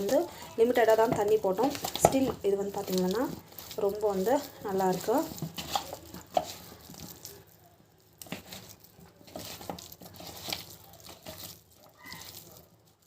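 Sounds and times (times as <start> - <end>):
wet squishes of batter in bowl: 0.0 - 13.0.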